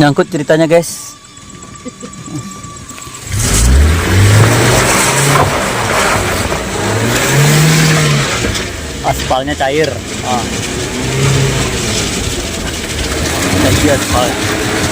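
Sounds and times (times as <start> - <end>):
vehicle engine revving: 0.2 - 14.9.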